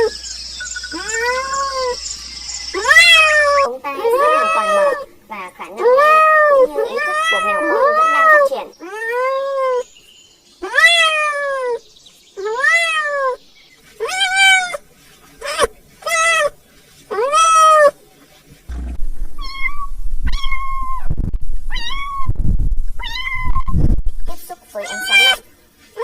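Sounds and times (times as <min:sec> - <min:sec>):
kittens meowing: 0:00.0 - 0:05.1, 0:05.8 - 0:09.8, 0:10.6 - 0:11.8, 0:12.4 - 0:13.4, 0:19.4 - 0:21.1, 0:21.7 - 0:22.3, 0:23.0 - 0:23.7, 0:24.8 - 0:25.4
low rumbling noise: 0:18.7 - 0:24.4.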